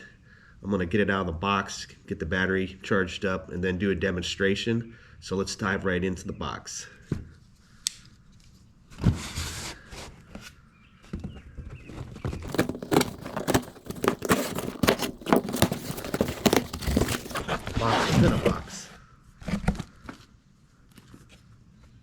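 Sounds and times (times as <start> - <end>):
cardboard rustling and tearing: 12.5 - 17.4.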